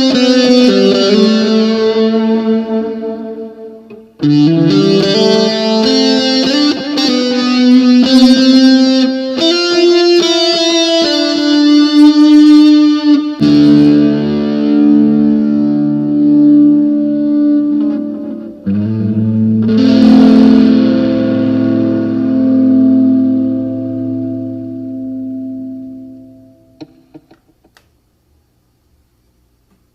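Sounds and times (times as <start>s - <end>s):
electric guitar with chorus effect: 0.0s - 27.9s.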